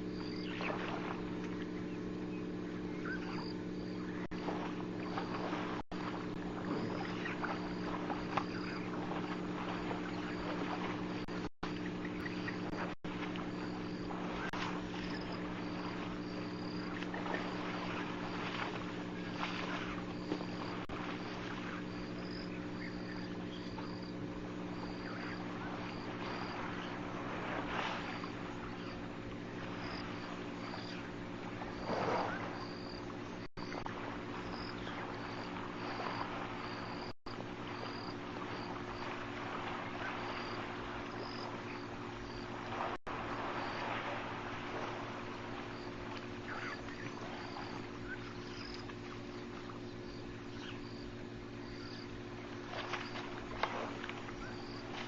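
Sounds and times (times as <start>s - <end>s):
high cricket-like chirp: 0.0s - 55.0s
steady low hum: 0.0s - 55.0s.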